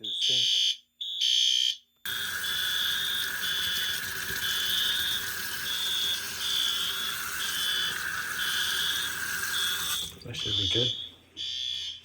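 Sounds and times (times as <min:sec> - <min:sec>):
fire alarm horns pulsing: 0:00.0 - 0:09.8, 0:10.4 - 0:12.0
tap water running into sink: 0:02.1 - 0:10.6.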